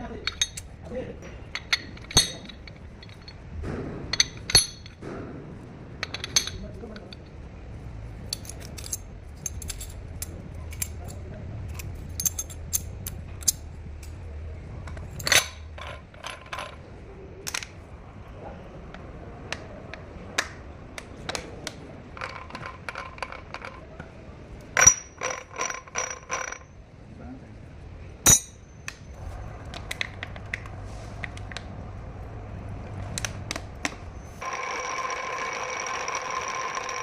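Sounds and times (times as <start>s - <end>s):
metal parts clinking: 0.0s - 3.5s, 4.1s - 5.0s, 6.0s - 7.4s, 8.2s - 14.2s, 14.8s - 16.8s, 22.2s - 23.8s, 24.7s - 26.8s, 28.2s - 30.7s
loud metal clanks: 0.0s - 7.4s.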